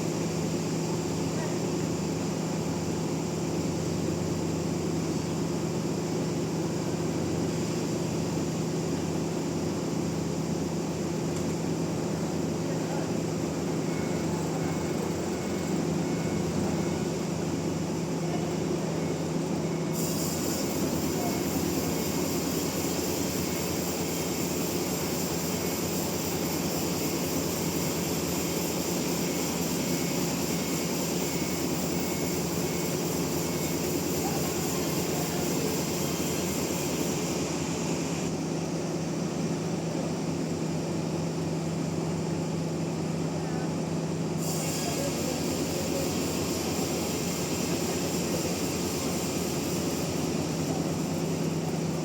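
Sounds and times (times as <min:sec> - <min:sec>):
sawmill machinery humming: 0:00.0 - 0:52.0.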